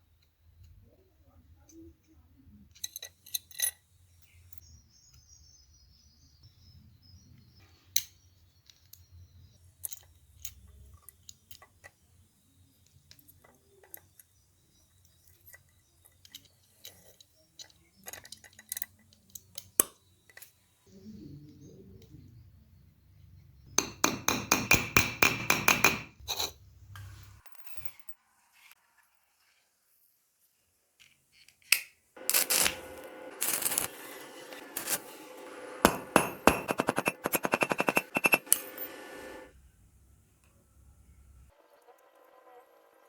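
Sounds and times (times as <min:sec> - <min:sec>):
padlock parts clicking and clinking: 0:02.7 - 0:04.7, 0:15.0 - 0:20.6, 0:35.9 - 0:38.7.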